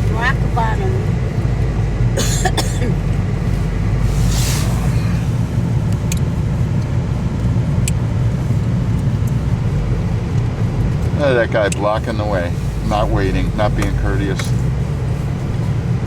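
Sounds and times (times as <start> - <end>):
car rumbling on snowy road: 0.0 - 16.0
brief hiss: 4.0 - 5.5.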